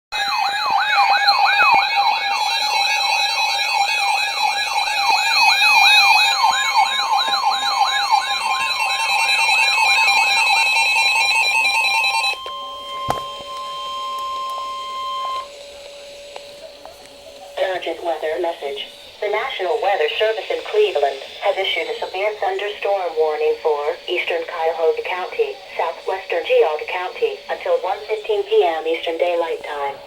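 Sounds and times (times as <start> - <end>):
steady warning alarm tone: 0.1 - 30.0
electronic falling sweep siren: 0.2 - 15.6.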